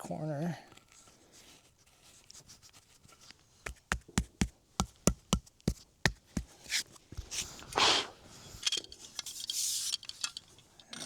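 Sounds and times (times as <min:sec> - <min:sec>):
knocks tapping concrete pad: 0:03.7 - 0:06.8.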